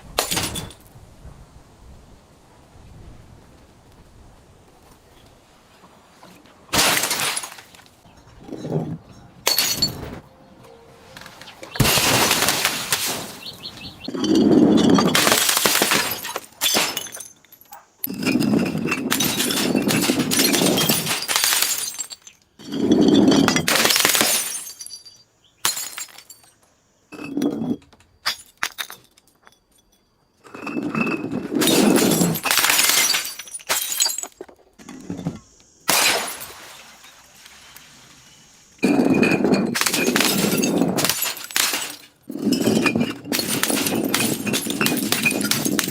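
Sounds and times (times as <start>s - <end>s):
glass bottles shattering: 0.2s - 0.8s, 6.7s - 10.1s, 11.6s - 26.6s, 27.2s - 37.5s, 38.8s - 45.9s.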